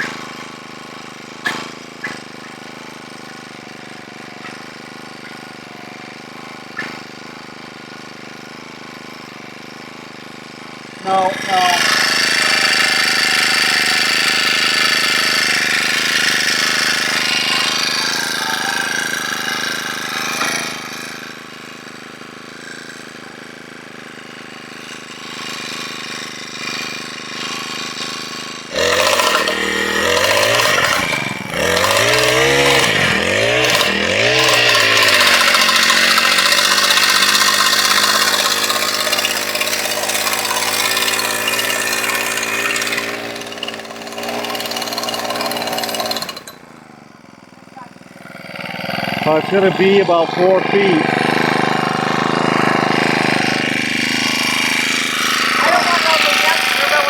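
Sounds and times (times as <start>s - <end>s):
small engine running: 0.0s - 57.0s
engine starting and revving: 10.3s - 23.3s, 24.4s - 57.0s.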